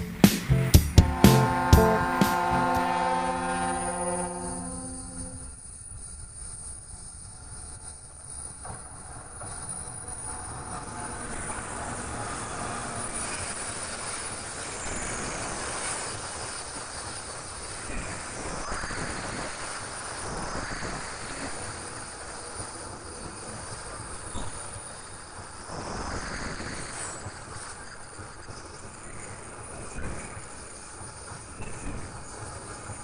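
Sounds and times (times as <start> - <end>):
train rushing along track: 0.0 - 33.0
faint high squeals: 3.2 - 5.8.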